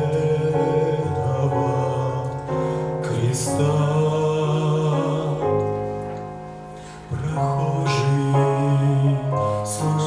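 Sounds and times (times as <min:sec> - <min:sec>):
keyboard accompaniment: 0:00.0 - 0:10.0
person singing religious song: 0:07.1 - 0:10.0.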